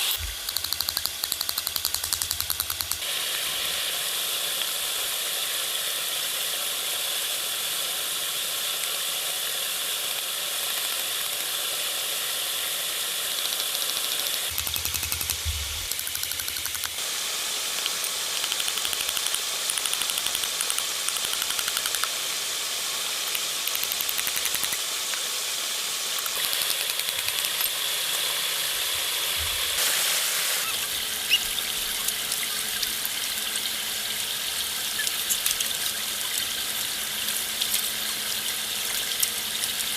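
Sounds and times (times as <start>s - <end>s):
steady hissing noise: 1.2s - 39.9s.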